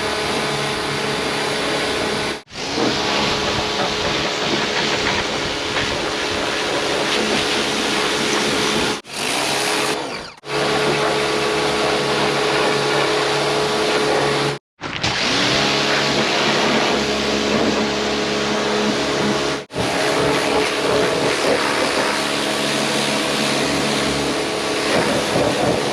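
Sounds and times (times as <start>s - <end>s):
water spray hissing: 2.5s - 9.9s, 19.9s - 25.9s
pump humming: 15.3s - 25.9s.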